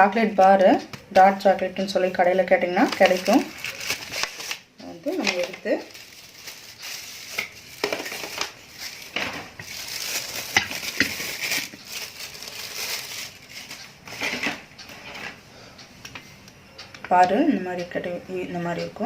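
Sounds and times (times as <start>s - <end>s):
wrapper crinkling: 2.7s - 14.4s.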